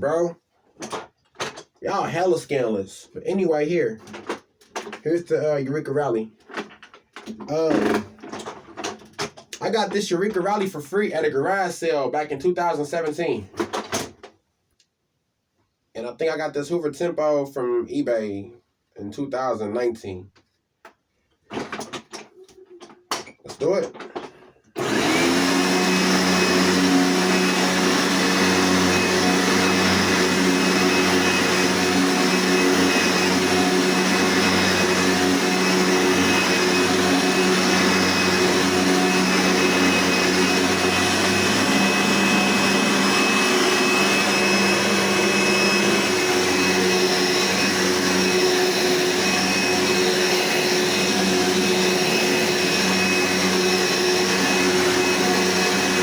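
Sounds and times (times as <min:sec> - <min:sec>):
vacuum cleaner running: 0:24.8 - 0:56.0.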